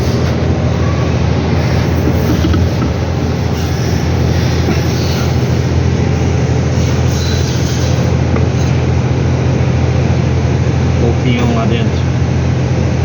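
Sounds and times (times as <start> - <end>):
mechanical drone with hiss: 0.0 - 12.5.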